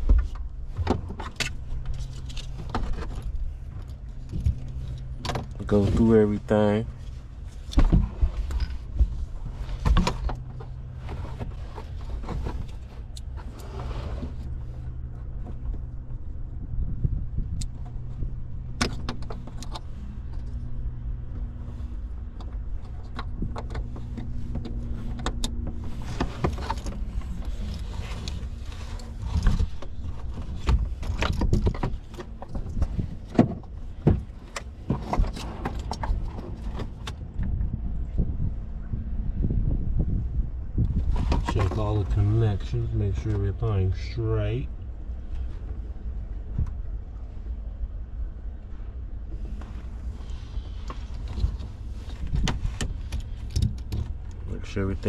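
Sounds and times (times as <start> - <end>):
hands handling car parts and tools: 0.0 - 16.2, 17.5 - 37.6, 49.3 - 55.0
steady low hum: 0.0 - 55.0.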